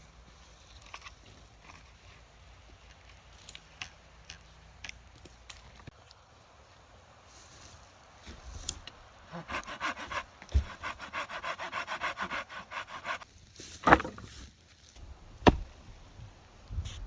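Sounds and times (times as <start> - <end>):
rasping strokes on wood: 9.3 - 13.2
axe chopping wood: 9.5 - 13.2, 13.8 - 14.4, 15.0 - 16.1.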